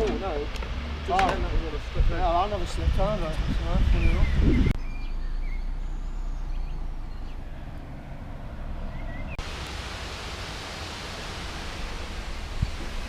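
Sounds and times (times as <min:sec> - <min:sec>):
wind rumbling on microphone: 0:00.6 - 0:05.0, 0:11.2 - 0:13.0
bright hiss: 0:09.4 - 0:13.0.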